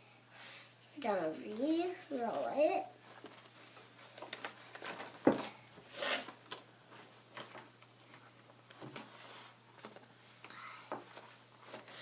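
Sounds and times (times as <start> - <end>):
play dough rubbing hiss: 0.3 - 2.9, 5.8 - 6.4.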